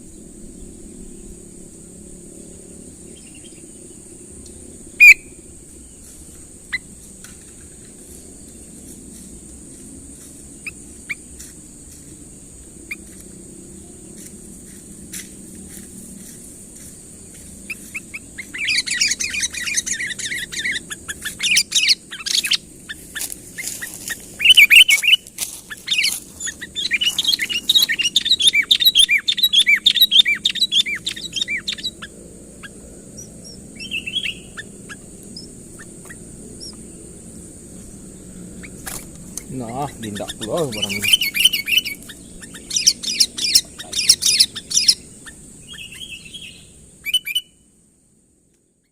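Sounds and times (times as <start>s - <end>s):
steady high hiss: 0.0s - 48.9s
bird chirping and chattering: 17.7s - 32.8s, 33.4s - 36.9s, 38.6s - 47.4s.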